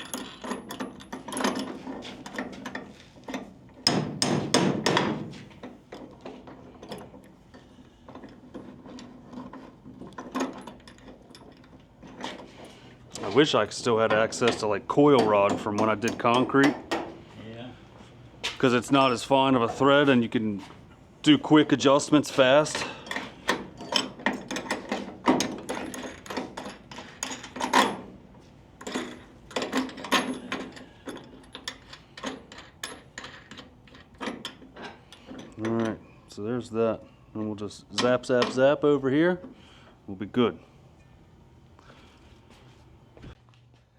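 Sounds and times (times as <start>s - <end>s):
metal tools clicking and knocking: 0.0s - 12.6s, 13.5s - 17.1s, 22.6s - 28.1s, 28.8s - 36.1s.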